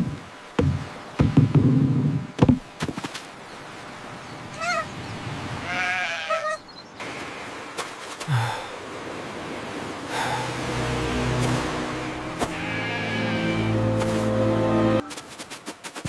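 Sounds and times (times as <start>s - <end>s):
cartoon sheep bleating: 12.5s - 13.8s.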